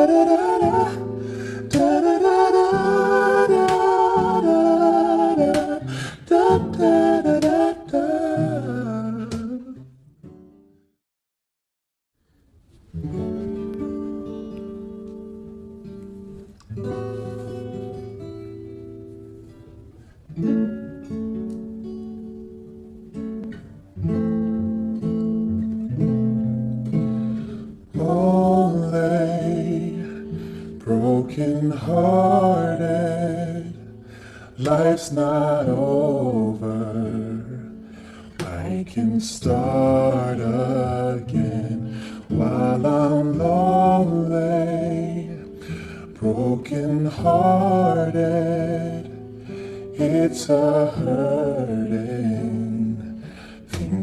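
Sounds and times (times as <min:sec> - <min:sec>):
person singing: 0:00.0 - 0:09.9, 0:27.9 - 0:33.9, 0:34.6 - 0:37.7, 0:38.4 - 0:54.0
r and b song with sung vocals: 0:00.0 - 0:10.0, 0:27.0 - 0:54.0
acoustic guitar chords: 0:00.0 - 0:10.9, 0:12.6 - 0:54.0.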